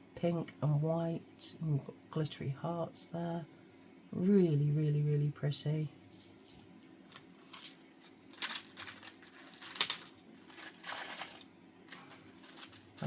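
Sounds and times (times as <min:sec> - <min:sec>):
plastic packets crinkling: 0:06.0 - 0:13.0.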